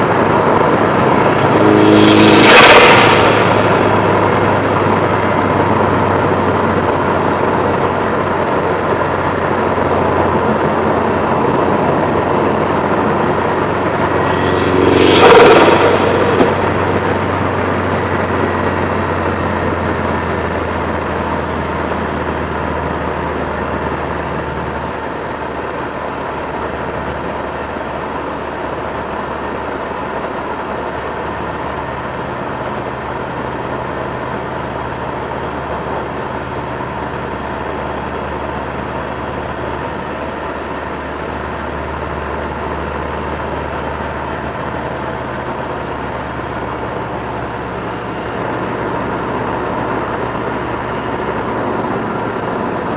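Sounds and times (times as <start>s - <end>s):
steady rushing noise: 0.0s - 7.6s, 8.4s - 19.6s
car engine running: 0.0s - 18.8s.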